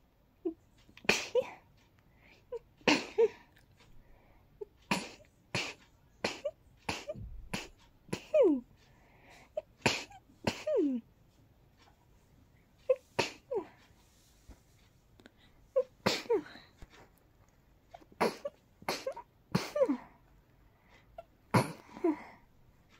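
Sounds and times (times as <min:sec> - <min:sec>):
person sneezing: 0:01.0 - 0:01.6, 0:02.9 - 0:03.4, 0:04.9 - 0:08.6, 0:09.8 - 0:11.0, 0:12.9 - 0:13.8, 0:15.8 - 0:16.6, 0:18.0 - 0:20.1, 0:21.5 - 0:22.4.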